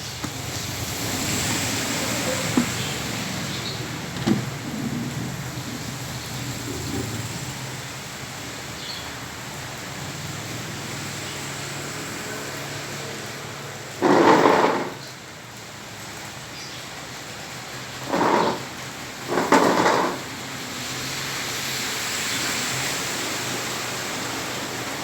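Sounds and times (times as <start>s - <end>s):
rain on a flooded street: 0.0s - 25.0s.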